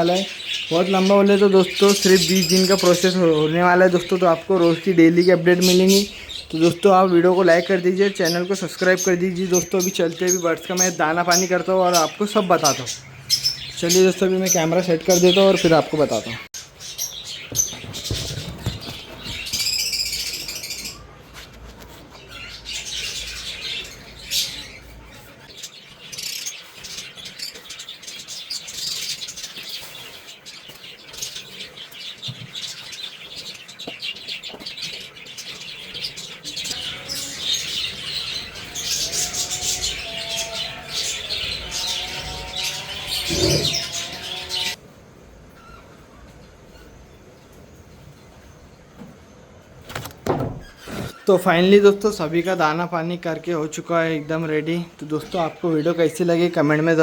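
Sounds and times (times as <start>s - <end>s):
birds chattering and chirping: 0.0s - 57.0s
wings flapping: 17.5s - 19.8s.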